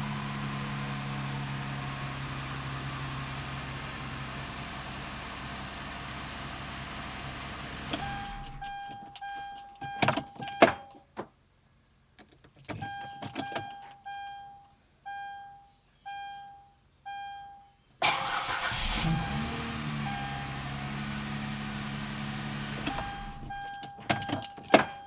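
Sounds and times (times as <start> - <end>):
car engine starting and idling: 0.0 - 10.8, 18.0 - 25.0
dashboard warning chime dinging: 7.9 - 11.2, 12.7 - 25.0.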